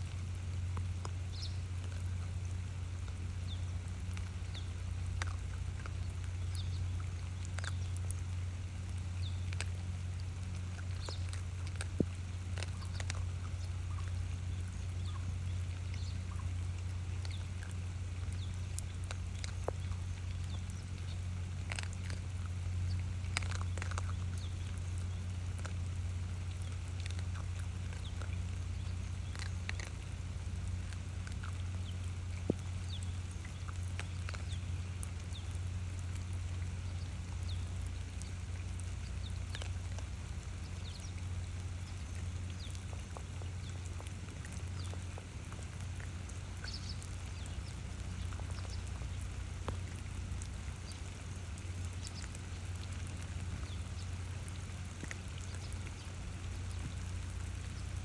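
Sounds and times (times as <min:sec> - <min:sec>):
animals crunching food: 0:00.0 - 0:58.0
low hum: 0:00.0 - 0:58.0.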